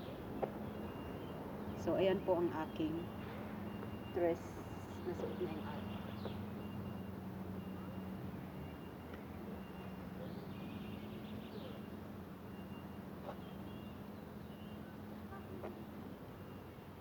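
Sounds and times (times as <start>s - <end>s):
birds chirping: 0.7s - 6.8s.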